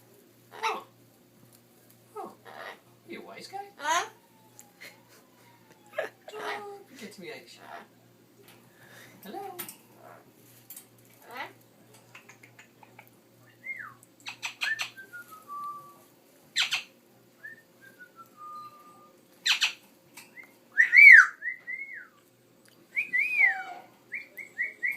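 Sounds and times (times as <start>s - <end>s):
bird whistling: 13.5s - 16.0s, 16.6s - 19.8s, 20.4s - 22.1s, 23.0s - 24.9s.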